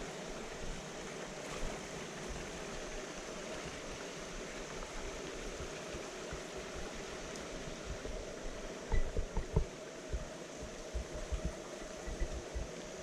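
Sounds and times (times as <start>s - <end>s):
water flowing over rocks: 0.0s - 13.0s.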